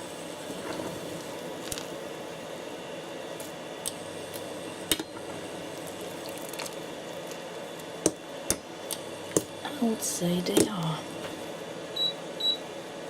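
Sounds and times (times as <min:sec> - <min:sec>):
noodles bubbling in a pan: 0:00.0 - 0:09.8.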